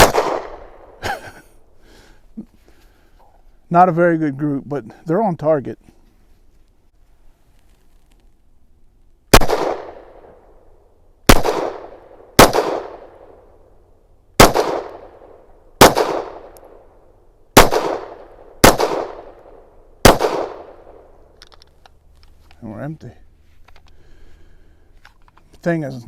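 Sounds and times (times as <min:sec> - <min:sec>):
pistol shots echoing: 0:00.0 - 0:01.0, 0:09.3 - 0:10.5, 0:11.3 - 0:13.5, 0:14.4 - 0:17.0, 0:17.6 - 0:21.2.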